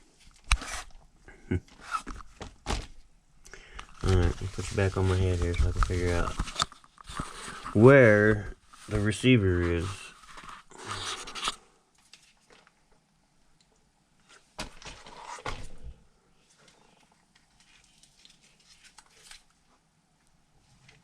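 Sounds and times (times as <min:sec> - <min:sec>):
light rubbing and scraping: 0:03.9 - 0:11.6.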